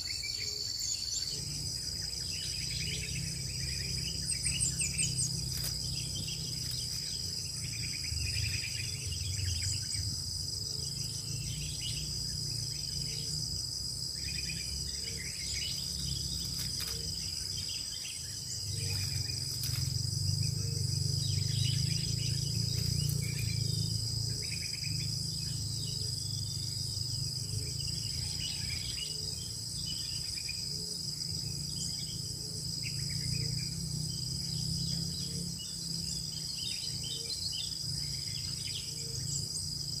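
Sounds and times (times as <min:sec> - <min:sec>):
high-pitched insect chorus: 0:00.0 - 0:40.0.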